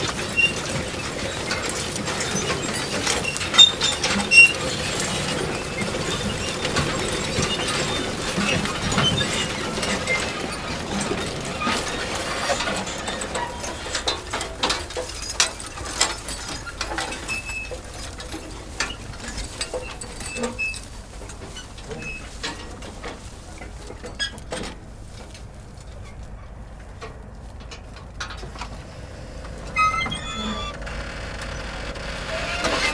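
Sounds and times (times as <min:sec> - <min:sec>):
manure spreader rattling: 0:00.0 - 0:26.2, 0:26.8 - 0:32.9.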